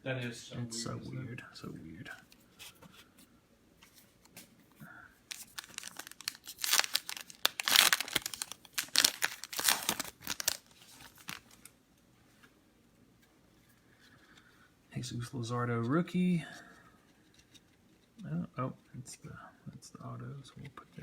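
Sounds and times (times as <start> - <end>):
wrapper tearing and crinkling: 5.3 - 11.7.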